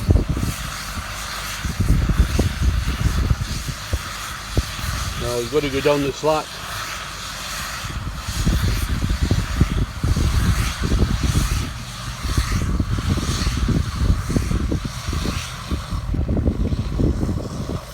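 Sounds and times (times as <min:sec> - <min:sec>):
wind buffeting microphone: 0:00.0 - 0:06.8, 0:07.4 - 0:17.9.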